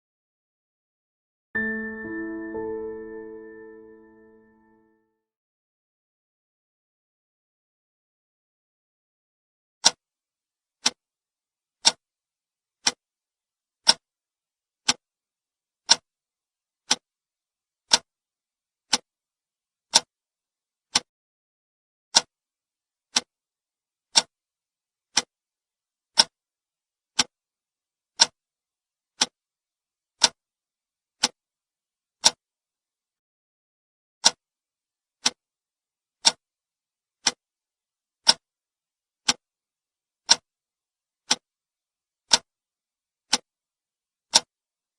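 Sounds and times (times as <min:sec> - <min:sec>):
clock ticking: 0:13.8 - 0:14.0, 0:38.2 - 0:38.4, 0:42.3 - 0:42.5, 0:44.3 - 0:44.5.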